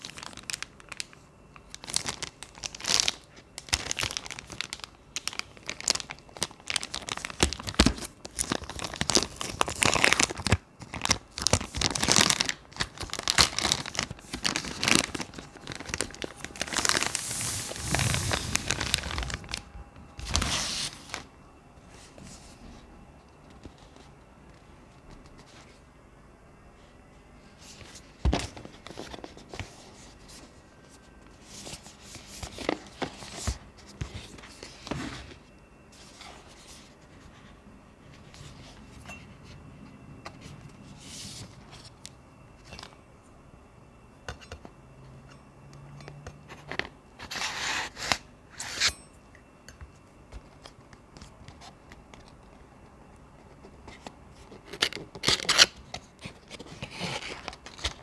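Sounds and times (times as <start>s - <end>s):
cardboard and plastic rustling: 0.0s - 22.9s, 27.6s - 39.6s, 53.4s - 58.0s.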